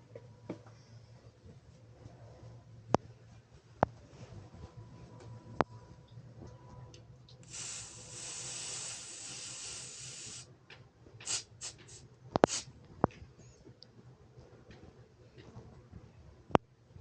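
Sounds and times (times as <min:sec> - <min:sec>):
steady hiss: 0:07.3 - 0:10.5, 0:11.2 - 0:12.8.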